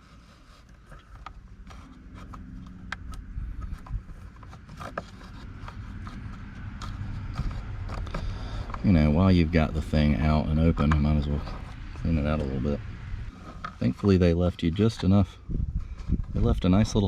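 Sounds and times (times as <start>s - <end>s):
hard plastic rubbing and clicking: 0.0s - 10.0s.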